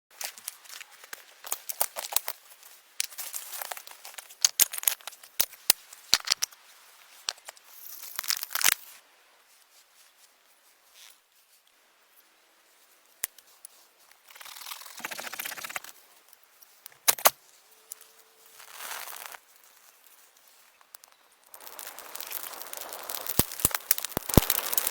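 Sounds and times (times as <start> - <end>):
dry brush snapping and crackling: 0.2 - 2.4, 16.8 - 24.9
rustling and tearing: 13.4 - 24.9.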